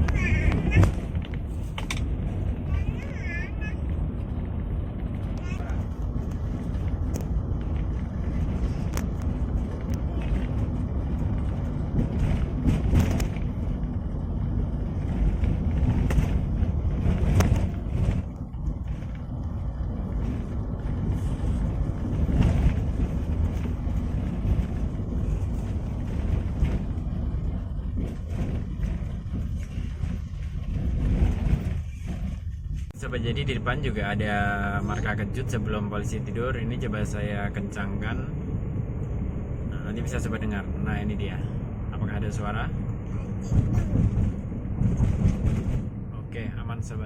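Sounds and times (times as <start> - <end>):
road and engine rumble: 0.0 - 47.0
knocks and rattles from bumps: 21.8 - 32.9, 43.4 - 46.0.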